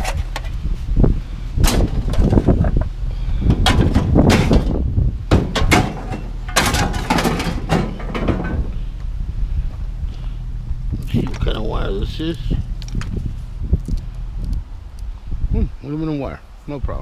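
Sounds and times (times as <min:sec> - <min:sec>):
metal scrap clattering: 0:03.5 - 0:08.7.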